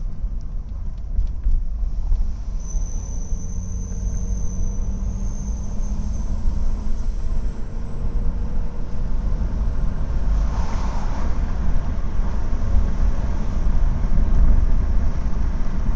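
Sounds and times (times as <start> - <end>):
road rumble: 0.0 - 15.9
faint thin whistle: 2.6 - 6.7.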